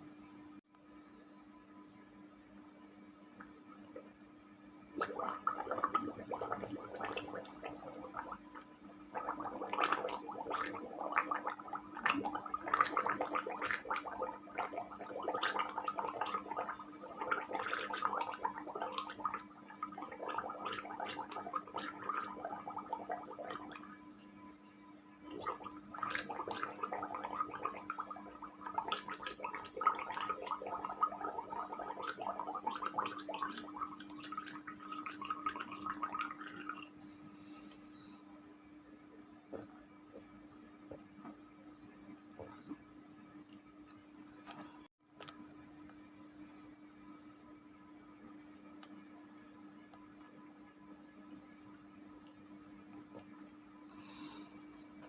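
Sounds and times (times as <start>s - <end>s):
low electrical hum: 0.0s - 55.0s
person gargling water: 5.0s - 23.9s, 25.3s - 36.9s.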